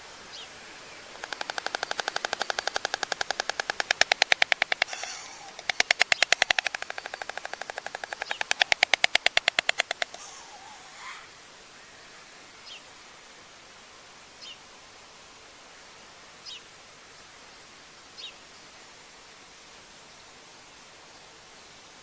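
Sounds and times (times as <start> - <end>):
microphone hiss: 0.0 - 22.0
high falling bird chirps: 1.1 - 11.3.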